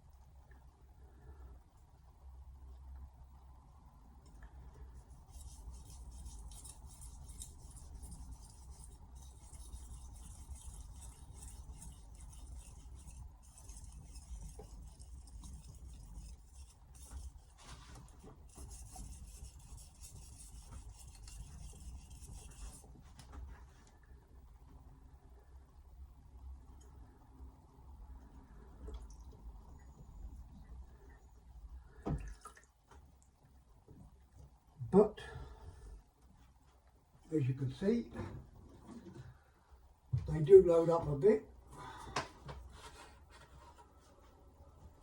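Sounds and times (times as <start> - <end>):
knife blade rasping on whetstone: 5.3 - 17.5, 18.5 - 22.8.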